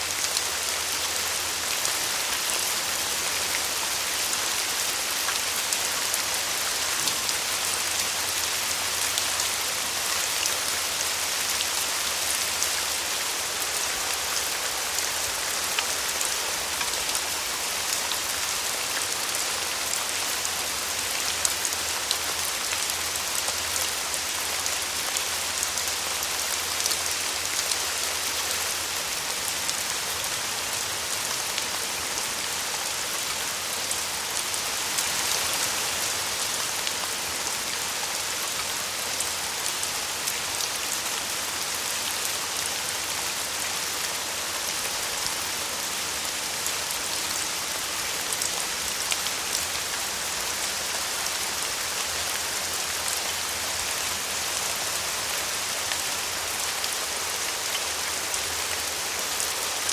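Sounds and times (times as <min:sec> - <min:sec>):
steady rain hiss: 0:00.0 - 0:59.9
raindrops ticking on a surface: 0:04.4 - 0:13.0.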